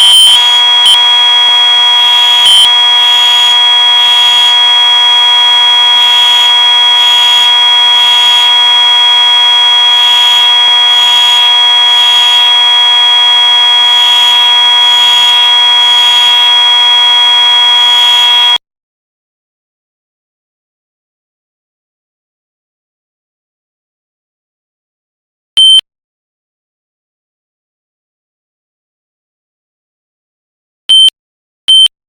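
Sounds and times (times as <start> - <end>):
pulsing fire alarm horns: 0.0 - 18.6
steady fire alarm horn: 0.0 - 18.6.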